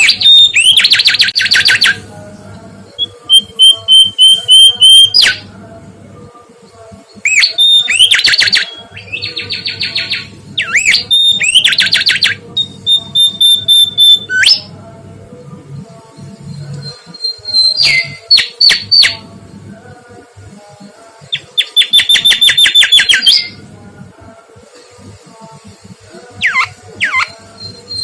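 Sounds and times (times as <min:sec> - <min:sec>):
bird whistling song with trill: 0:00.0 - 0:02.0, 0:03.0 - 0:05.4, 0:07.3 - 0:14.7, 0:16.8 - 0:19.2, 0:21.3 - 0:23.6, 0:26.4 - 0:28.0.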